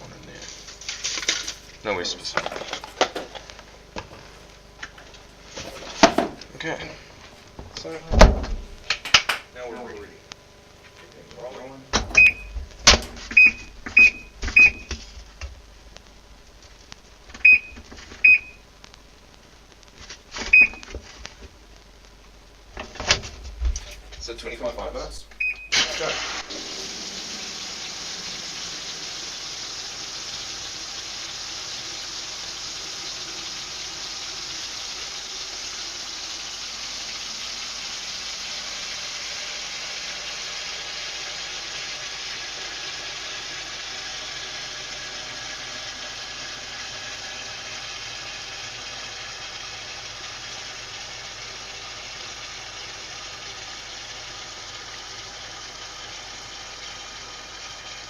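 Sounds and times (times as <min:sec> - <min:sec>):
washing machine filling with water: 0:25.5 - 0:58.0.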